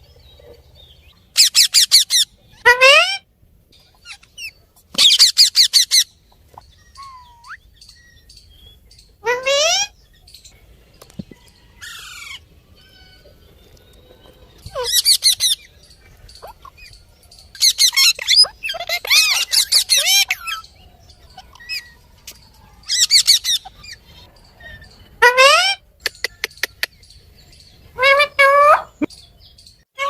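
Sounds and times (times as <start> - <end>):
parrot squawking and whistling: 1.4 - 3.2, 4.4 - 6.1, 6.9 - 7.7, 9.2 - 10.0, 14.7 - 15.6, 17.6 - 20.7, 24.7 - 26.9.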